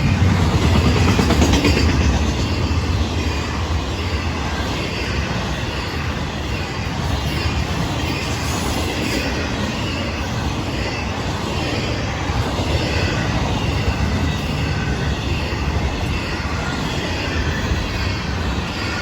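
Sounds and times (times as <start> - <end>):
train wheels rumbling on rails: 0.0 - 19.0.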